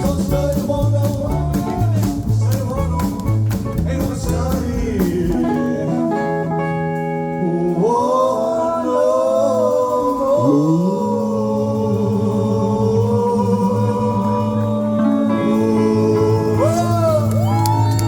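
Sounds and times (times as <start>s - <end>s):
men singing long held notes: 0.0s - 6.6s, 7.2s - 18.0s
live rock band playing: 0.0s - 8.8s, 14.1s - 18.0s.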